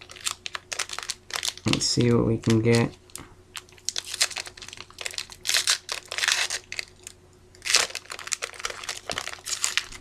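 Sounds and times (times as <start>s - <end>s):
plastic wrapper crinkling and tearing: 0.0s - 10.0s.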